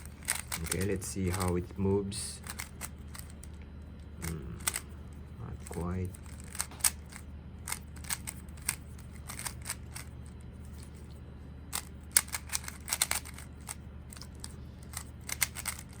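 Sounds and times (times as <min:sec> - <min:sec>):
speed cube clicking: 0:00.0 - 0:01.6, 0:02.4 - 0:03.4, 0:04.6 - 0:04.8, 0:05.6 - 0:10.1, 0:11.7 - 0:16.0.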